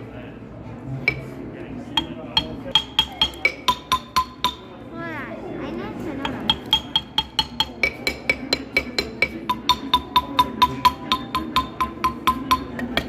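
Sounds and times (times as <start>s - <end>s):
quick ringing percussive notes: 2.0s - 4.7s, 6.2s - 12.9s.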